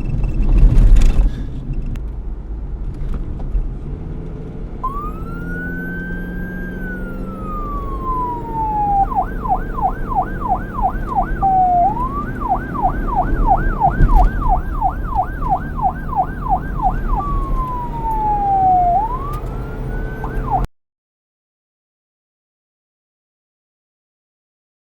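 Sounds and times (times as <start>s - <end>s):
police siren wailing and yelping: 4.8s - 20.7s.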